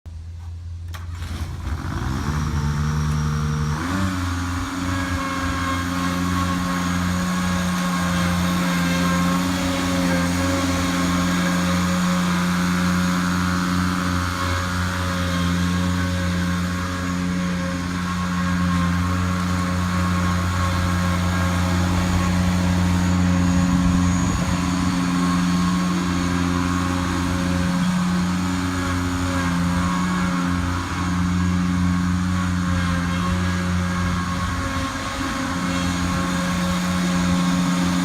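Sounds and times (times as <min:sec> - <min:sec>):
mower engine running: 0:00.1 - 0:38.0.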